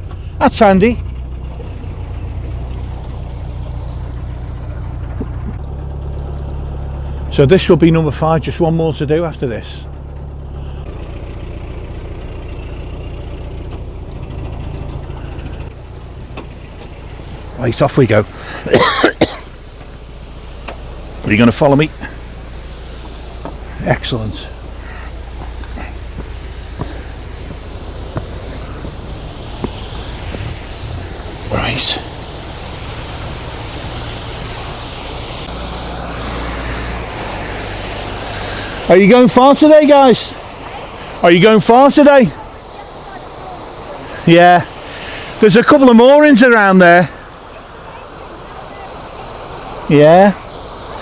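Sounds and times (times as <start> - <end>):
diesel engine idling: 0.0 - 51.0
steady hiss: 15.0 - 51.0.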